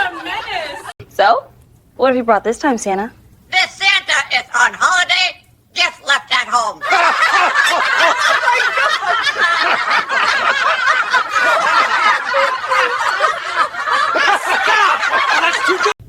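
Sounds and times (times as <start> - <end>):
loud cackling laughter: 6.8 - 16.0.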